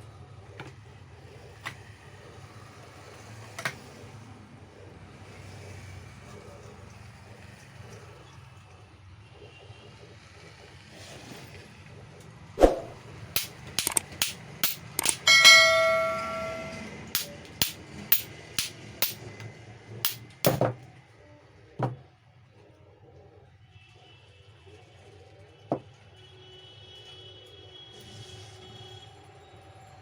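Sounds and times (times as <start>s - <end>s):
hammer knocking on metal: 12.8s - 19.2s, 20.1s - 20.8s
bell-like metallic ring: 13.4s - 19.2s, 20.1s - 20.6s.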